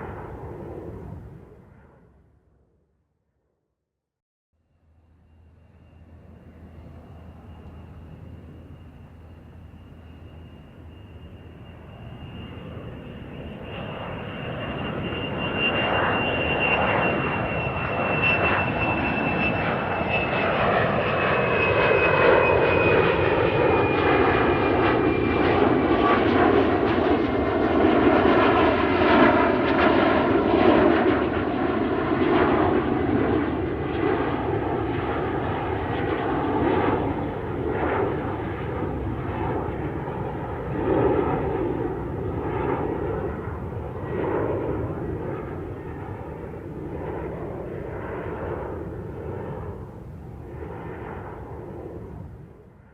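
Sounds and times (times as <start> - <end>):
airplane engines roaring: 0.0 - 2.7, 4.6 - 52.9
thin high whine: 4.6 - 20.1.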